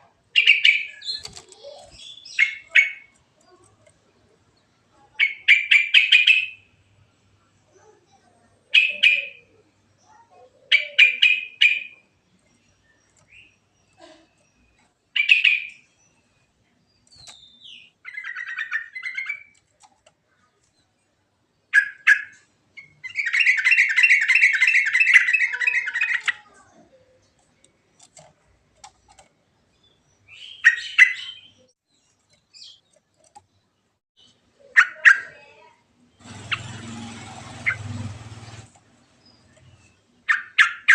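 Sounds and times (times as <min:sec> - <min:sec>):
bulbul singing: 0:00.3 - 0:03.8, 0:08.7 - 0:16.3.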